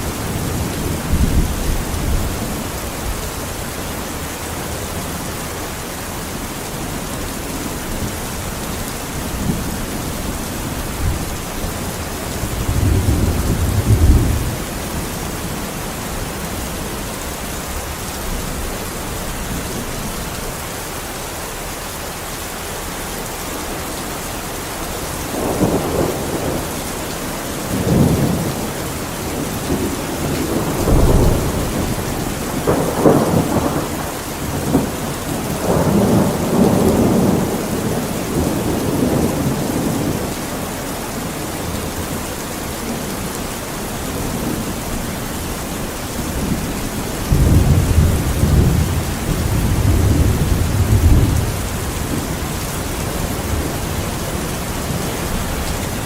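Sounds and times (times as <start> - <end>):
steady rain: 0.0 - 56.0
rolling thunder: 0.1 - 3.2, 9.1 - 17.0, 25.2 - 27.0, 27.6 - 40.6, 45.6 - 56.0.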